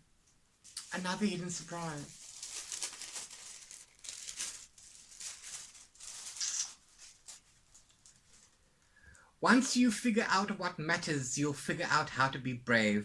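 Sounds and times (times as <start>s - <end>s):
paper and packaging rustling: 0.6s - 8.6s.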